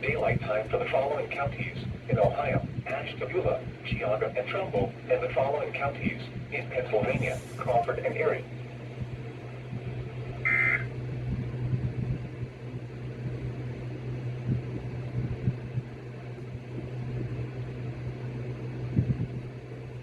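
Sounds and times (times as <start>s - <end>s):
low electrical hum: 0.0s - 20.0s
alternating two-tone burst: 10.4s - 10.9s.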